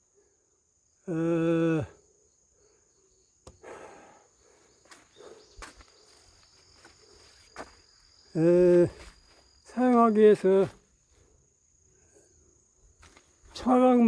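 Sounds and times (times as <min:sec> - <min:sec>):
insect trilling: 0:00.6 - 0:14.0
light clicks and scuffs: 0:13.0 - 0:13.7.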